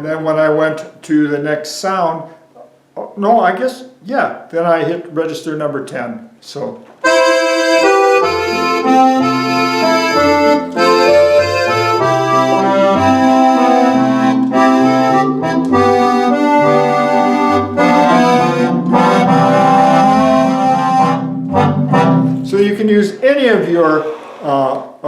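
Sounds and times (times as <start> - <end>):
organ voice: 0.0 - 25.0
accordion playing chords: 7.0 - 23.0
stepping bass line: 7.1 - 22.5.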